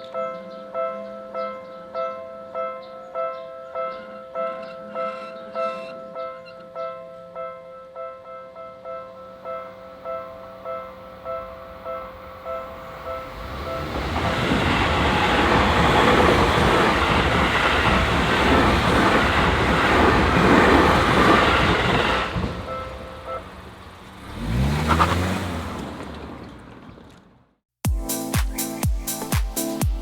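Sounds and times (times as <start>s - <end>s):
level-crossing warning bell: 0.0s - 24.0s
train passing: 9.1s - 26.2s
engine rising in pitch: 12.6s - 18.4s, 21.4s - 26.6s.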